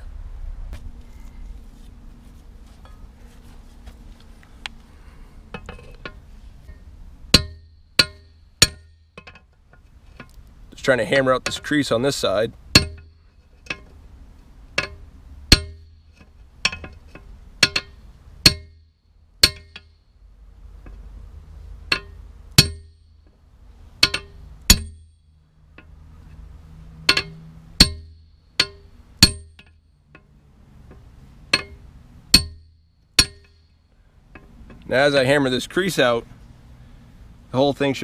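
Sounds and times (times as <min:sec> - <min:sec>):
hammer clanging on metal: 0:05.6 - 0:09.5, 0:12.7 - 0:13.9, 0:14.8 - 0:18.8, 0:19.4 - 0:19.9, 0:21.9 - 0:23.0, 0:24.0 - 0:25.1, 0:27.0 - 0:30.3, 0:31.5 - 0:33.8.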